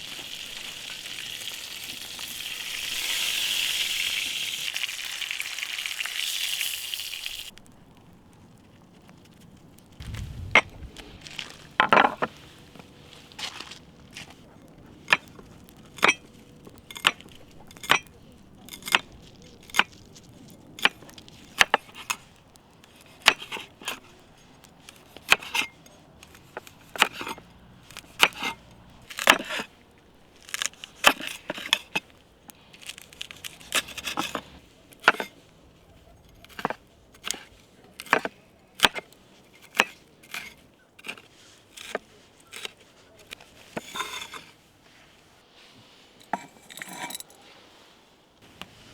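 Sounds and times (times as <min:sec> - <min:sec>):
blade chopping on wood: 0:24.9 - 0:29.7.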